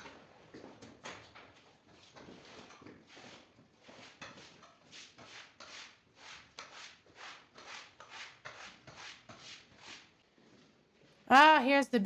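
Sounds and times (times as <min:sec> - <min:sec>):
cleaning tool rubbing wet rug: 0:02.2 - 0:10.2.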